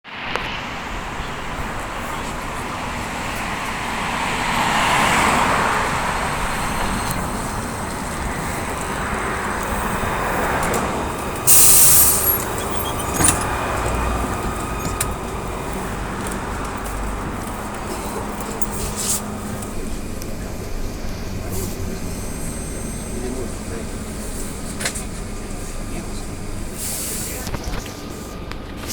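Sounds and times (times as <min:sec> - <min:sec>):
trolleybus running: 0:00.0 - 0:28.9
compressed air hiss: 0:11.4 - 0:12.6, 0:26.8 - 0:27.4.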